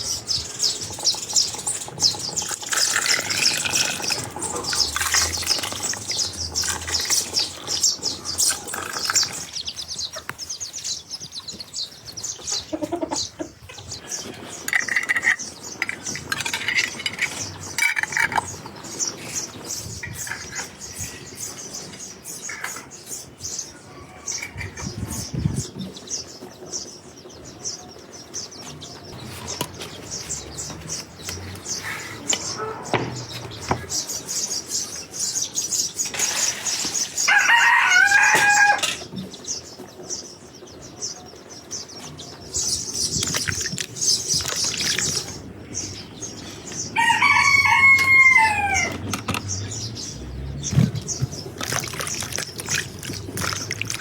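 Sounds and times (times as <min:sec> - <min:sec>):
rooster crowing: 0:23.8 - 0:24.8, 0:37.3 - 0:39.0, 0:47.0 - 0:49.1.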